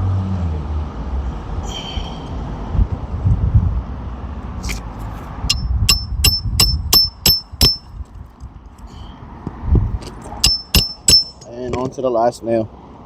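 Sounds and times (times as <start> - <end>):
hammer striking roofing nail: 5.5 - 7.9, 10.4 - 11.4.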